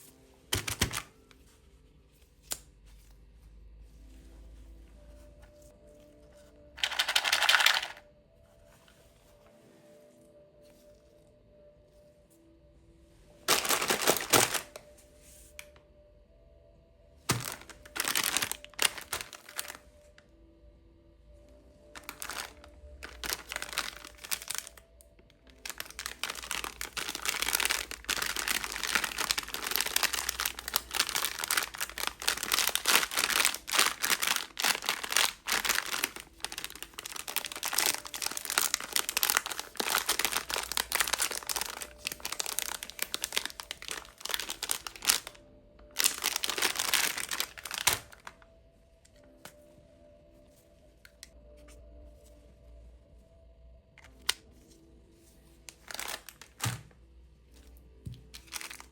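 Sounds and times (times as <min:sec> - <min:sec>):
plastic candy wrappers crinkling: 0:00.5 - 0:01.3, 0:06.8 - 0:08.1, 0:13.5 - 0:14.9, 0:17.3 - 0:20.2, 0:21.9 - 0:48.4, 0:55.7 - 0:57.0, 0:57.6 - 0:58.9.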